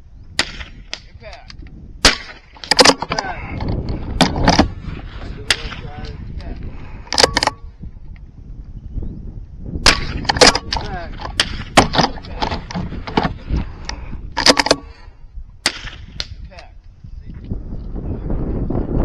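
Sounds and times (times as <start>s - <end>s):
rifle shots: 0.4s - 0.9s, 2.0s - 3.3s, 9.8s - 12.2s, 15.6s - 16.2s.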